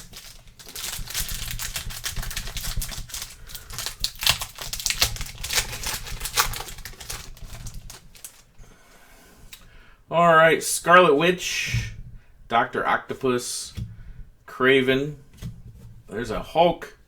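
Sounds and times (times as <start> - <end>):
cards and wrapper crinkling: 0.0 - 8.6.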